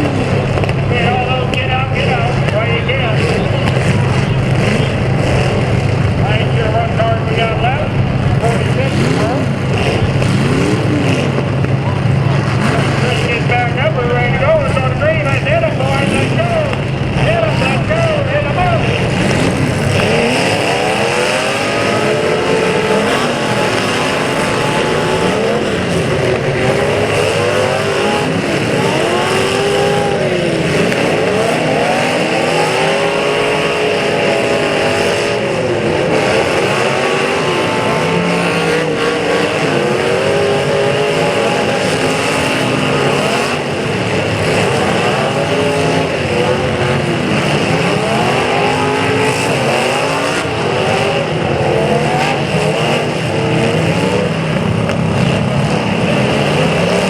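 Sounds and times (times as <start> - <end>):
car engines revving hard: 0.0 - 57.0.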